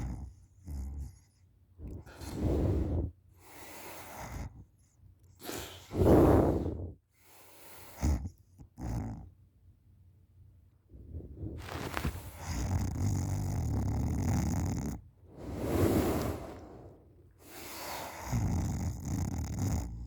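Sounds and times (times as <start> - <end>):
person snoring: 11.0 - 20.0.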